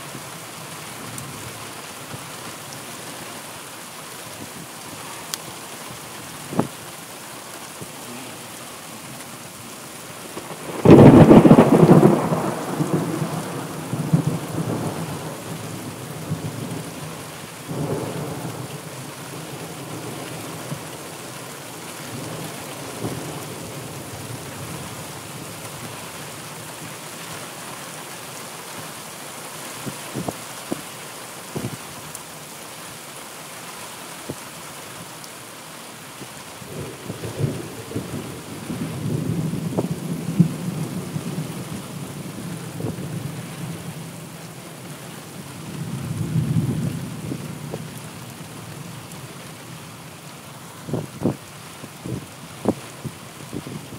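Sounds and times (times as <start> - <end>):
steady rain: 0.0 - 53.9
thunder rumbling: 9.1 - 21.1, 36.6 - 48.0.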